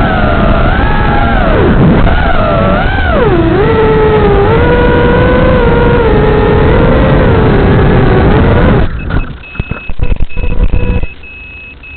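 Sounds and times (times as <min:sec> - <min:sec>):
drone motors whining: 0:00.0 - 0:11.9
high electronic beeping: 0:08.7 - 0:11.9.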